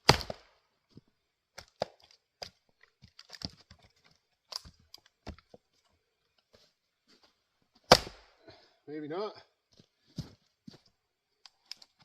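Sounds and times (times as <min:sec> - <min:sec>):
firewood knocking and clicking: 0:01.5 - 0:05.7.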